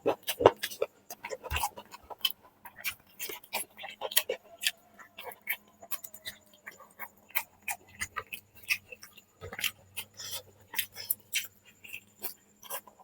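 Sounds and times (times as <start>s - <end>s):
person chewing wetly: 0.0s - 13.0s.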